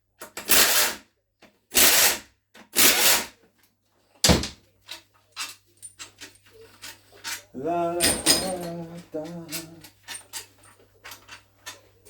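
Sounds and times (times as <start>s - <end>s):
power tool undoing bolts: 8.0s - 10.4s
light clicks of parts handled: 8.0s - 11.9s.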